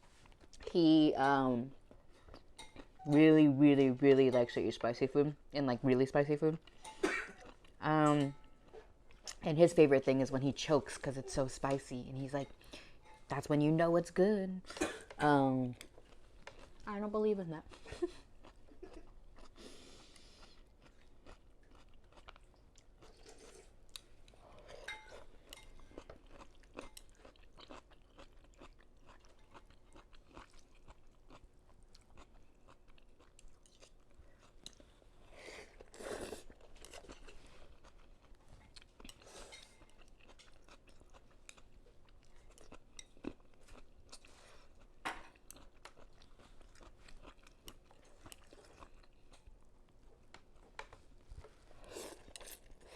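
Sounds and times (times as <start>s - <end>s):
close chewing and crunching: 15.7s - 52.9s.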